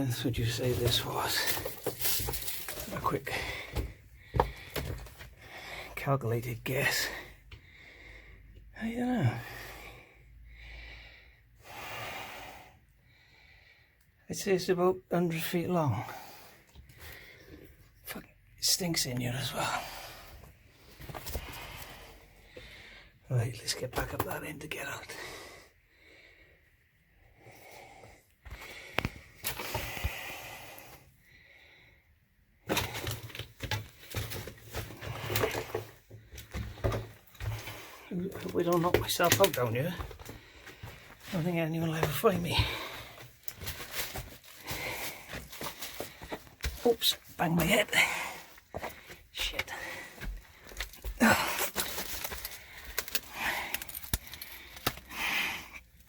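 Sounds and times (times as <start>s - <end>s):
rustling and scuffing: 0.4s - 5.3s
man breathing hard: 3.3s - 6.0s, 7.2s - 8.7s, 9.3s - 14.2s, 19.7s - 23.2s, 25.2s - 33.2s, 42.6s - 46.8s, 48.0s - 56.0s.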